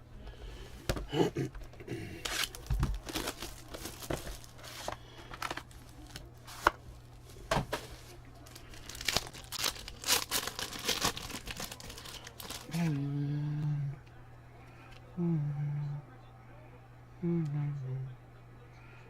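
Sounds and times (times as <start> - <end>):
wrapper tearing and crinkling: 2.2 - 6.7, 8.4 - 13.0.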